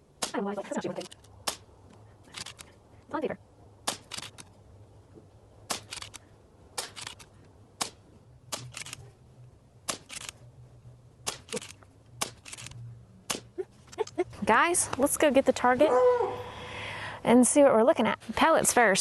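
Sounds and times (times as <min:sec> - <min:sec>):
sharp clicks: 0:01.0 - 0:02.7, 0:03.8 - 0:04.6, 0:05.7 - 0:06.2, 0:06.8 - 0:09.0, 0:09.8 - 0:10.4, 0:11.2 - 0:14.2.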